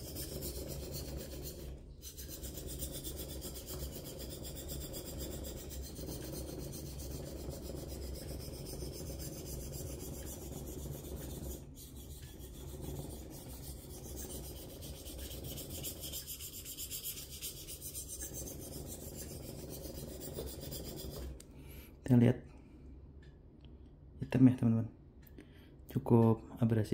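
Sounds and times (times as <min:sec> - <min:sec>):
knife rasping on whetstone: 0:00.0 - 0:21.4.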